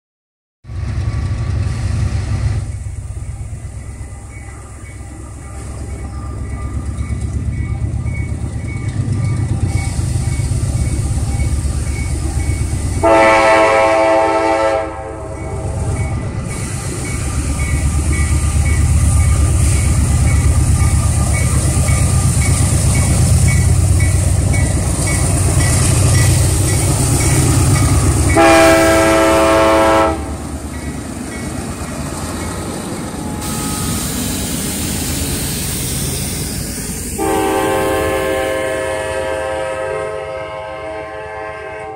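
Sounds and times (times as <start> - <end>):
diesel locomotives rumbling past: 0.6 - 41.9
locomotive air horn blasts: 13.0 - 15.9, 28.3 - 30.4, 37.2 - 41.9.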